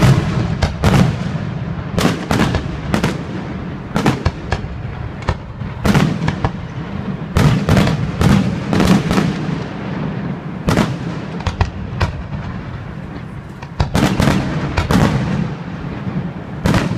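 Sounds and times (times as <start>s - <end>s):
fireworks bursting with sharp bangs: 0.0s - 16.9s
continuous low rumble: 11.4s - 14.9s.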